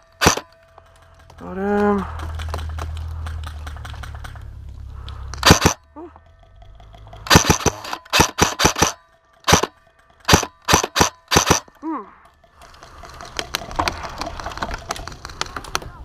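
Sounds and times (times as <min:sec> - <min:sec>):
small clicks: 0:00.0 - 0:16.0
airsoft gun shots: 0:00.2 - 0:00.5, 0:05.4 - 0:05.8, 0:07.3 - 0:09.7, 0:10.3 - 0:11.6.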